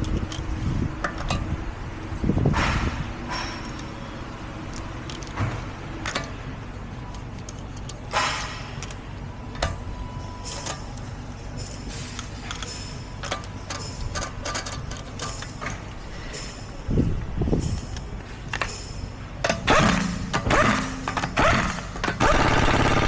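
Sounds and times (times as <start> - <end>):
workshop hum: 0.0 - 23.0
metallic clicks of wheel bolts: 3.3 - 16.8, 17.5 - 22.2.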